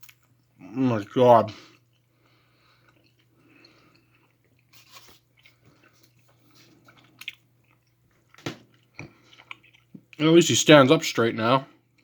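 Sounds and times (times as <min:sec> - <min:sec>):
faint chewing of gummy candy: 0:01.4 - 0:10.2.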